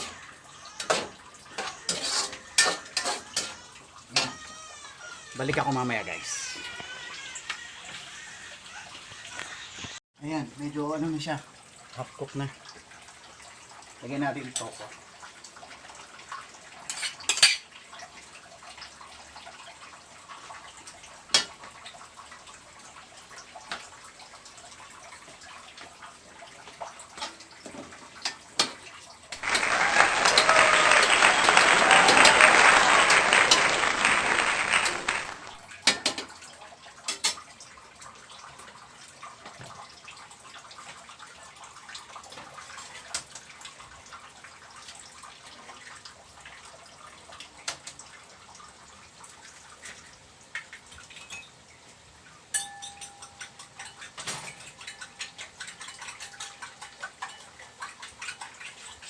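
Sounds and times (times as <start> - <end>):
utensils clinking on pans: 0.8 - 4.3, 16.9 - 17.7, 51.1 - 51.6, 52.5 - 59.0.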